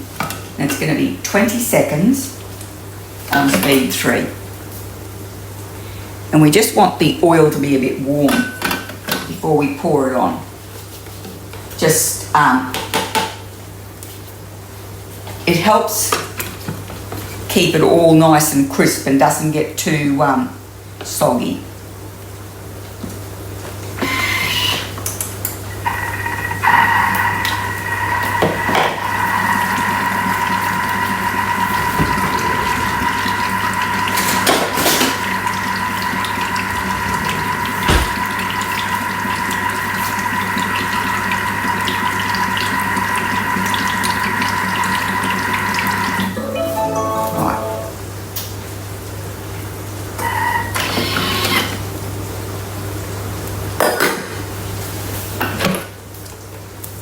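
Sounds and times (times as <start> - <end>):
kitchen appliance motor whining: 25.9 - 46.3.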